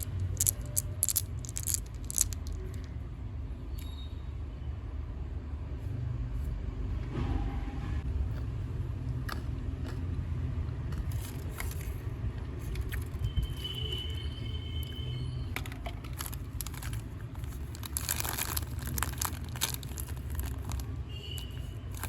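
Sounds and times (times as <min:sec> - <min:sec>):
packaging clicks and crinkles: 0:00.0 - 0:02.9, 0:15.6 - 0:22.0.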